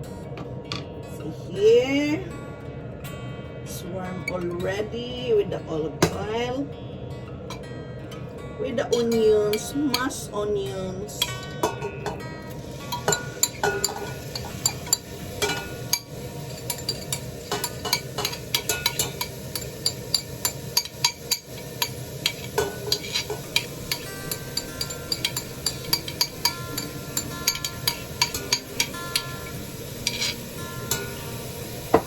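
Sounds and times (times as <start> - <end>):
spoon clinking and scraping pot: 11.2 - 32.0
rice sizzling in oil: 12.5 - 32.0.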